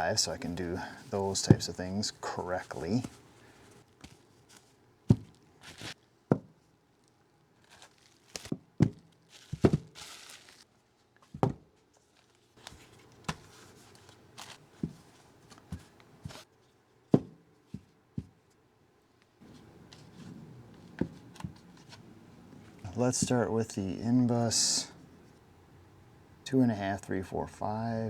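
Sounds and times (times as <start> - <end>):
plastic packaging crinkling: 7.6 - 10.8, 12.0 - 15.6.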